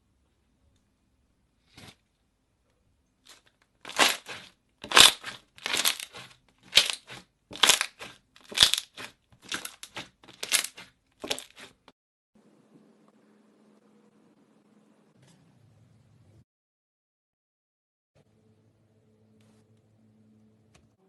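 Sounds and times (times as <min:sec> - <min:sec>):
slime squelching by hand: 0:03.3 - 0:11.9.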